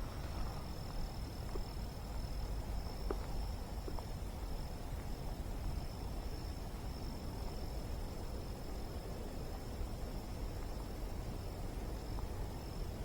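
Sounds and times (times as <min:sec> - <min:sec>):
faint ticks: 0:00.0 - 0:05.9
high-pitched insect trill: 0:00.0 - 0:13.0.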